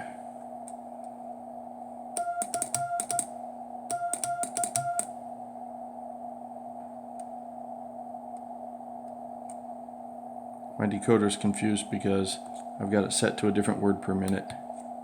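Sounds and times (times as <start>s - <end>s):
morse code beeps: 2.2s - 3.2s, 3.9s - 5.1s
key clicks: 2.2s - 3.3s, 3.9s - 5.1s.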